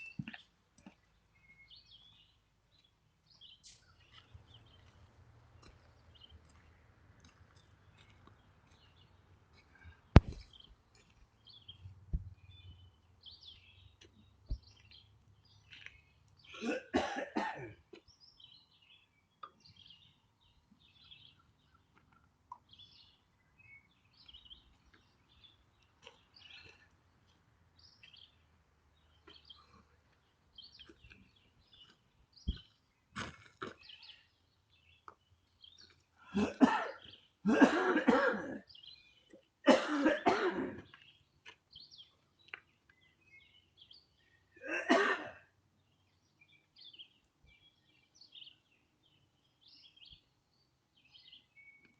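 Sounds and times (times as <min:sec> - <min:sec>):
small birds chirping: 0:00.0 - 0:51.9
person coughing: 0:16.5 - 0:17.8, 0:36.3 - 0:38.7, 0:39.7 - 0:40.8, 0:44.6 - 0:45.4.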